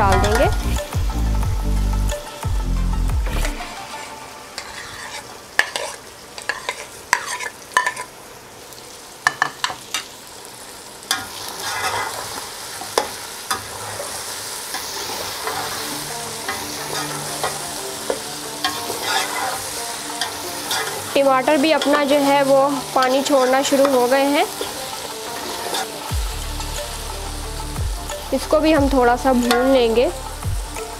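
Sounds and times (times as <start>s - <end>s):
spoon stirring and scraping pot: 3.4s - 8.1s, 11.1s - 12.4s, 13.0s - 22.2s, 23.0s - 26.1s
chicken frying in hot oil: 4.0s - 30.8s.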